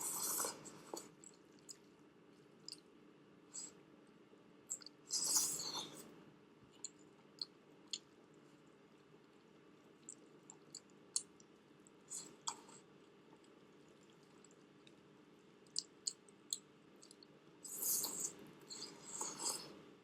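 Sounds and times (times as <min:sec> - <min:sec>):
wet mouth clicks from chewing: 0:06.8 - 0:08.1, 0:10.0 - 0:11.5, 0:13.3 - 0:19.7.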